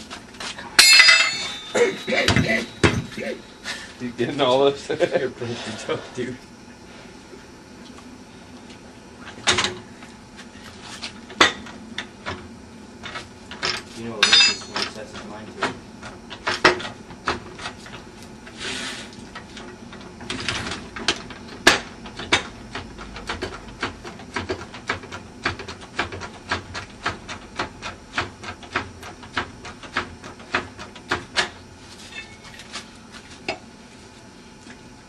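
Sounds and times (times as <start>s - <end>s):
metal tools clicking and knocking: 0.8s - 3.1s, 13.6s - 15.0s.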